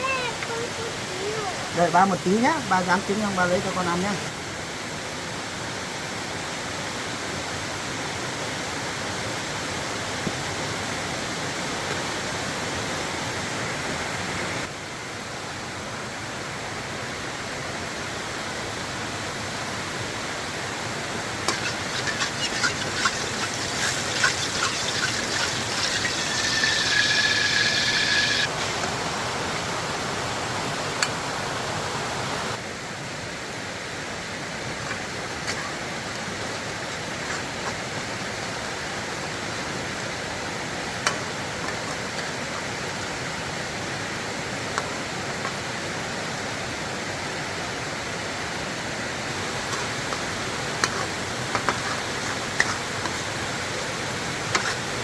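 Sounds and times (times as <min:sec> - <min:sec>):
rushing water: 0:00.0 - 0:55.0
oil crackling and spattering: 0:21.4 - 0:28.5.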